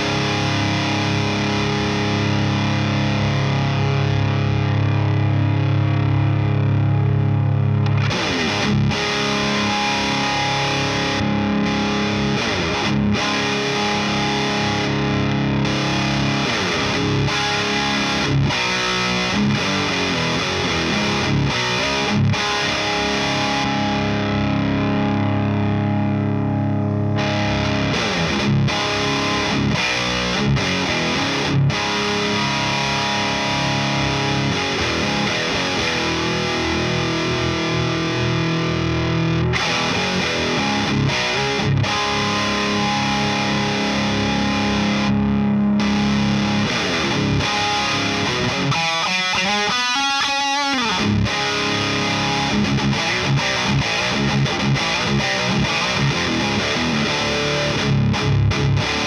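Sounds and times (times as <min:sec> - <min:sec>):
distorted electric guitar: 0:00.0 - 0:59.0.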